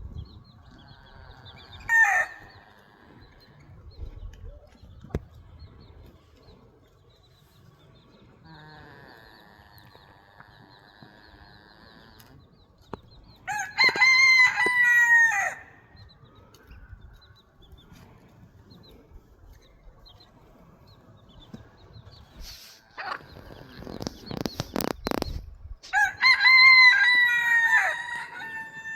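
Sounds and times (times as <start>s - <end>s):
rooster crowing: 1.8s - 2.6s, 13.5s - 15.8s, 25.9s - 28.9s.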